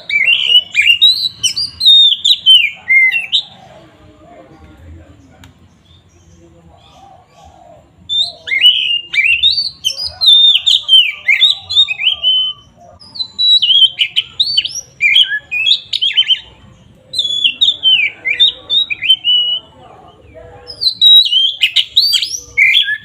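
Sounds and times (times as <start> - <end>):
bird singing whistled notes: 0.0 - 3.6, 8.0 - 19.8, 20.7 - 23.0.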